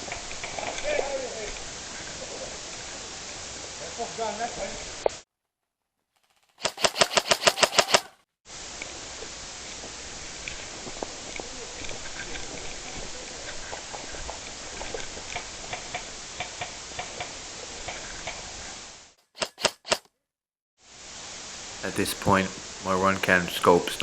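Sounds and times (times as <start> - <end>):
microphone hiss: 0.0 - 5.1, 20.9 - 24.0.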